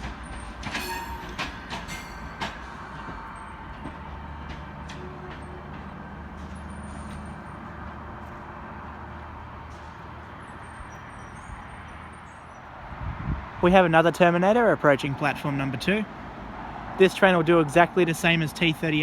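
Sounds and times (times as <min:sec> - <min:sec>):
wheels clicking over rail joints: 0:00.0 - 0:08.6
train rumbling slowly: 0:00.0 - 0:19.0.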